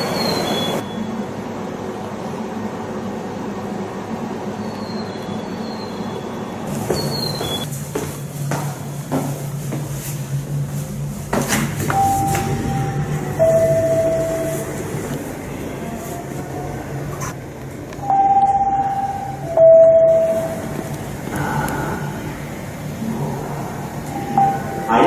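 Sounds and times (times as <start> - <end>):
steady low hum: 0.8 - 25.0.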